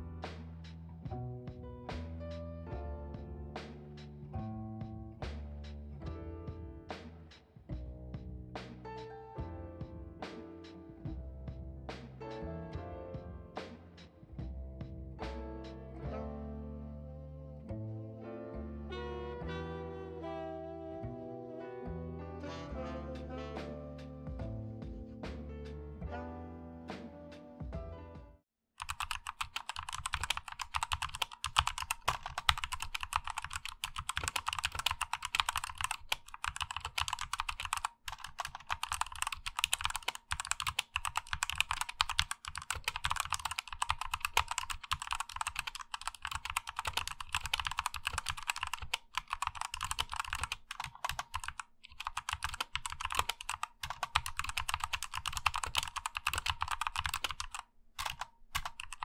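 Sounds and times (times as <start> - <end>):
fast typing on mechanical keyboard: 28.8 - 59.0.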